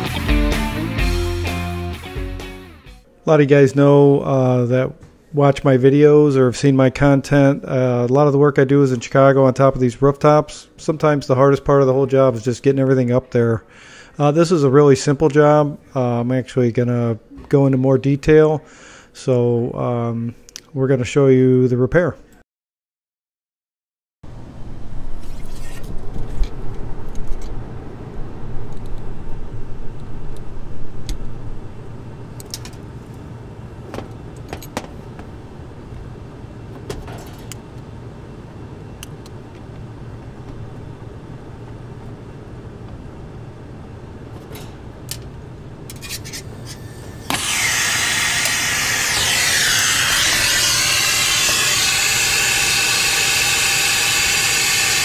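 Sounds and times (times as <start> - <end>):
gas hissing: 46.2 - 55.0.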